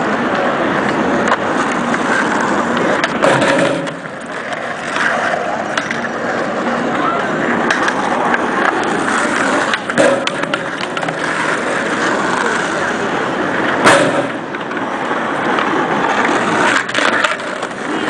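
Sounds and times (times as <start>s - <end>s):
skateboard impact: 0.0s - 18.0s
skateboards rolling and clacking: 0.0s - 18.0s
background chatter: 6.2s - 9.7s, 11.2s - 16.5s.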